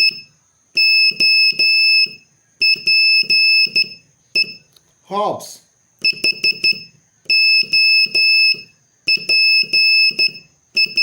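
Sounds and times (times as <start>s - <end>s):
morse code beeping: 0.0s - 4.7s, 6.0s - 11.0s.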